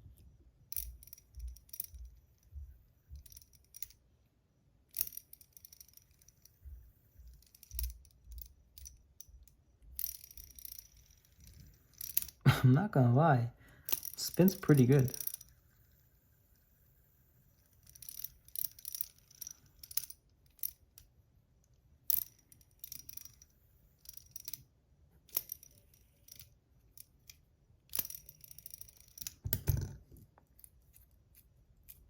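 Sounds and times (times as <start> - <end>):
metal parts clicking and clinking: 3.1 - 4.0, 4.9 - 12.4, 13.8 - 15.5, 17.8 - 21.1, 22.1 - 32.0.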